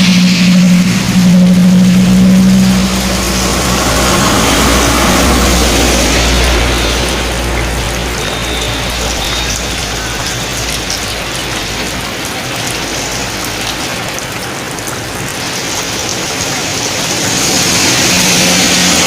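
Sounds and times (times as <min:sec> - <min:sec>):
passing vehicle engine rumble: 0:00.0 - 0:15.2, 0:15.9 - 0:19.0
steady rain hissing: 0:00.0 - 0:19.0.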